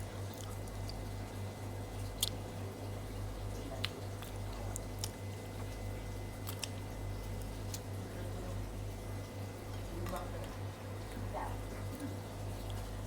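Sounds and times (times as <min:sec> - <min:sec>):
steady low hum: 0:00.0 - 0:13.0
person chewing: 0:00.3 - 0:01.0, 0:02.1 - 0:02.4, 0:03.8 - 0:05.2, 0:06.4 - 0:06.8.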